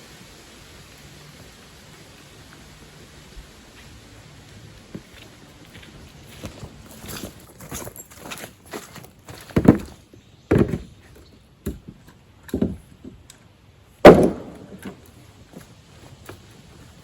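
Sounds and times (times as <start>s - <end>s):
heavy thumps of objects set down: 9.3s - 13.2s.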